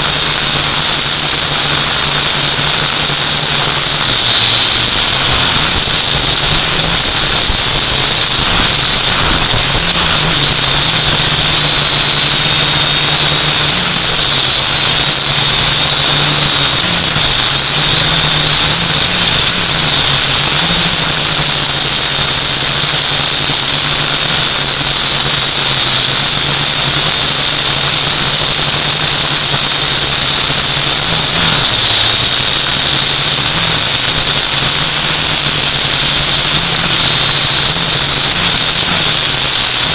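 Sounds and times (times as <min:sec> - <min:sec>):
drone motors whining: 0:00.0 - 0:39.9.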